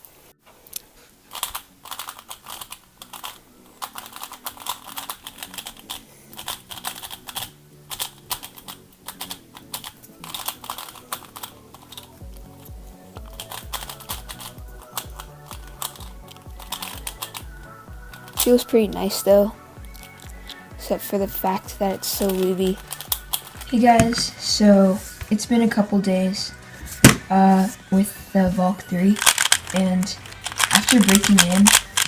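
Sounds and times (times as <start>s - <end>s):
plastic clicks of cube turning: 1.3s - 17.5s, 18.1s - 18.6s, 22.1s - 24.2s, 29.2s - 32.0s
background music with bass beat: 12.1s - 25.3s.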